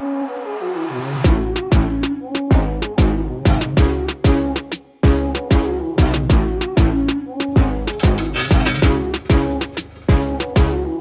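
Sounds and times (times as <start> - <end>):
kick drum: 1.3 - 7.0, 7.6 - 8.2, 10.1 - 10.8
sustained bass: 1.3 - 11.0
sharp percussion hits: 7.9 - 10.7.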